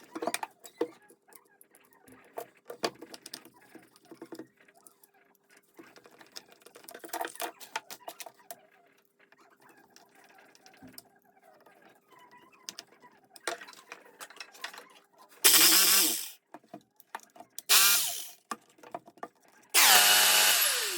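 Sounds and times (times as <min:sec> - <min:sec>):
breaker hammer motor running: 0:15.4 - 0:16.4, 0:17.7 - 0:18.4, 0:19.8 - 0:20.9.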